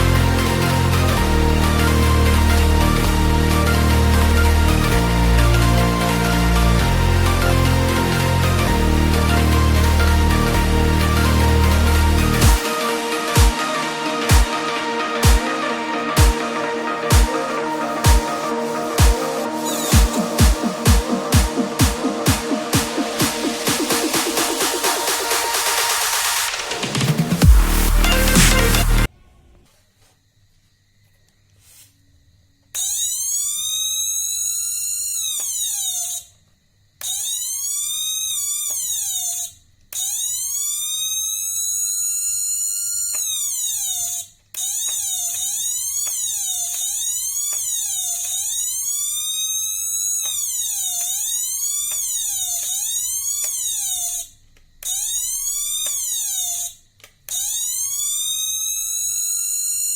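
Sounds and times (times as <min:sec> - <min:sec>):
electronic siren wailing: 0:00.0 - 0:29.1, 0:40.2 - 0:54.3.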